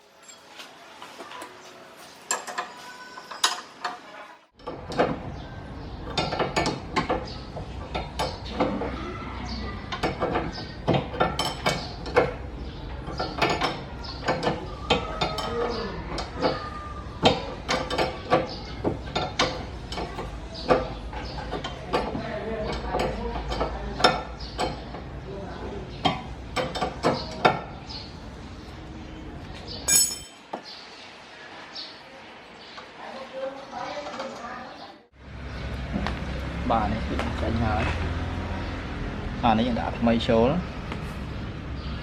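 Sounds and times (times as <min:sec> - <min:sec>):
metal tools clinking: 0:00.0 - 0:00.7, 0:02.2 - 0:04.0, 0:29.8 - 0:30.5.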